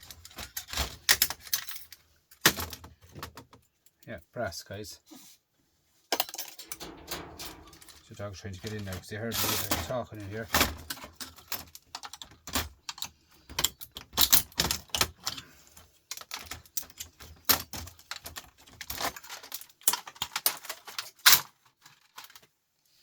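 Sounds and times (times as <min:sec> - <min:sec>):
clicks of small parts handled: 0:06.1 - 0:08.0.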